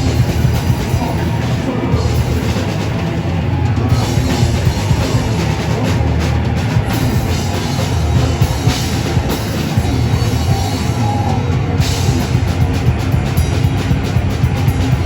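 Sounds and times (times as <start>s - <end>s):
drum kit: 0.0s - 15.0s
live rock band playing: 0.0s - 15.0s.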